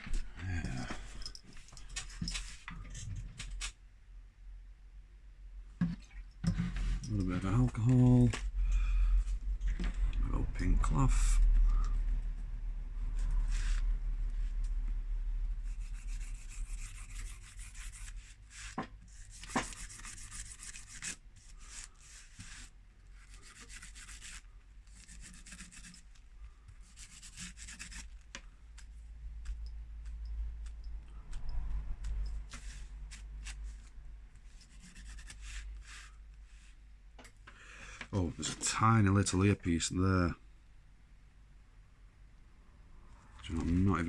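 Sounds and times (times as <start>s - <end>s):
cloth scrubbing phone frame: 5.8s - 8.4s, 15.6s - 28.2s, 30.0s - 36.8s.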